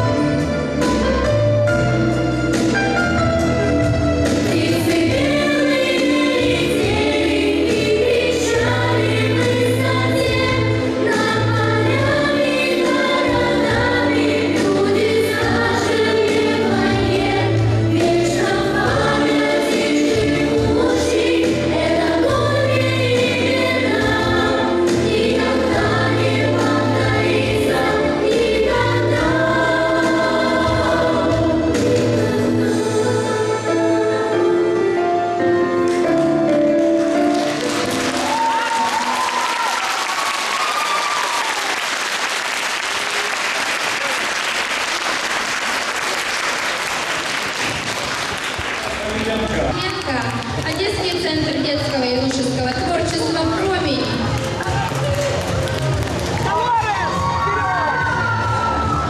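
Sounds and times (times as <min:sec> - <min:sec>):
several voices singing: 0:04.3 - 0:35.0.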